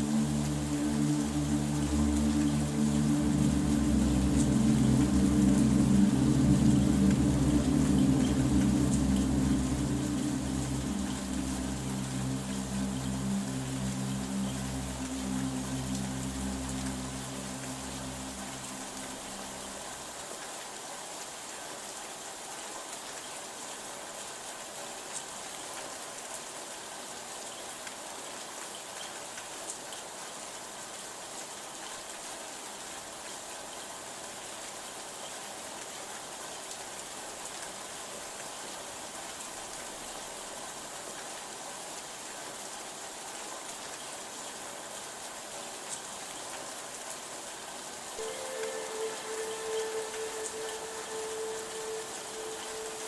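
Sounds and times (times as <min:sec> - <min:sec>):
low tones: 0:00.0 - 0:20.1, 0:48.2 - 0:53.0
heavy rain falling: 0:00.0 - 0:53.0.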